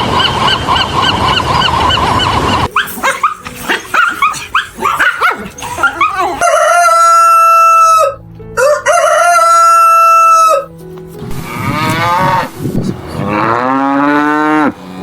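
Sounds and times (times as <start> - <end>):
animal yelping calls: 0.0 - 8.2.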